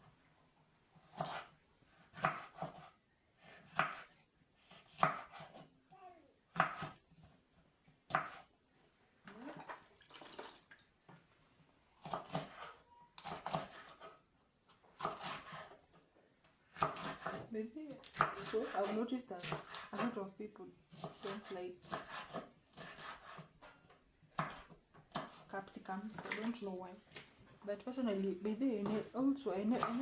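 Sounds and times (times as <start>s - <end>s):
knife chopping on cutting board: 1.0s - 5.7s, 6.6s - 7.0s, 8.1s - 8.5s, 12.0s - 14.2s, 15.0s - 15.8s, 16.7s - 17.5s, 18.1s - 20.2s, 20.9s - 23.5s, 24.3s - 25.5s, 29.7s - 30.0s.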